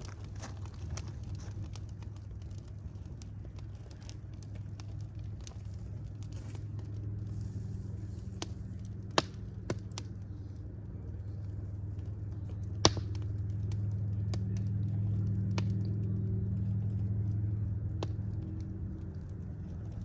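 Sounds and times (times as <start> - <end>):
fire crackling: 0.0 - 20.0
fire pops: 0.0 - 20.0.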